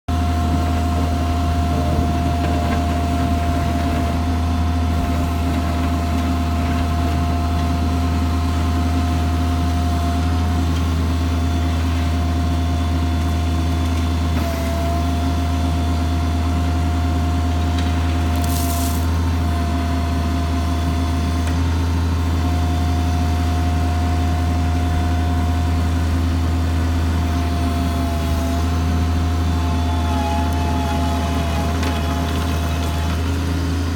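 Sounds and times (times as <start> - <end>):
loader engine running: 0.1 - 33.9
short hiss: 18.4 - 19.1.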